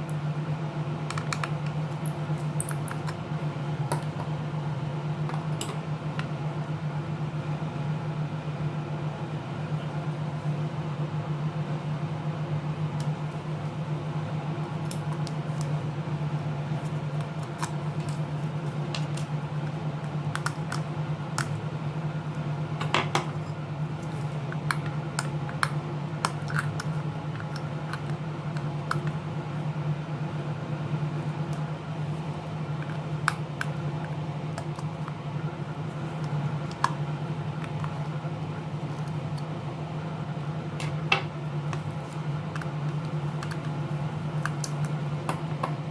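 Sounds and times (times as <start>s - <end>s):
steady low hum: 0.0s - 45.9s.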